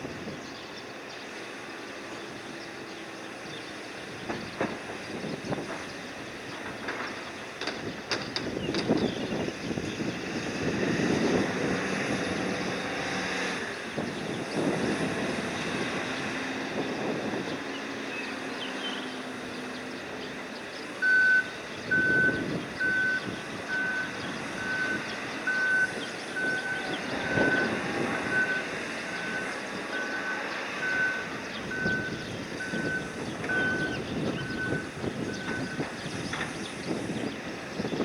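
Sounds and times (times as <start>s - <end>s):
machinery rumble: 0.0s - 38.0s
wind: 0.0s - 38.0s
electronic warning beeper: 21.0s - 35.9s.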